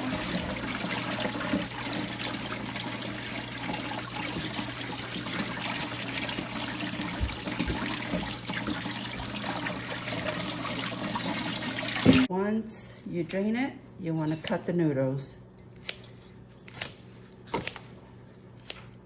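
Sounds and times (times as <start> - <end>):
tap water running: 0.0 - 12.3.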